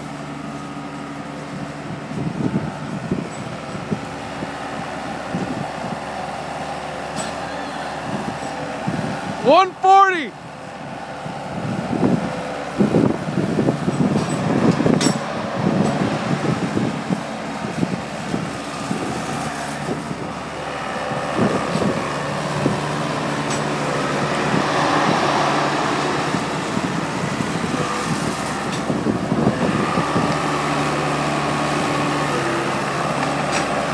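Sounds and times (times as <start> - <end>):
loader engine running: 0.0 - 33.9
metal clanks and knocks: 7.1 - 7.5, 13.9 - 16.1, 23.3 - 23.9.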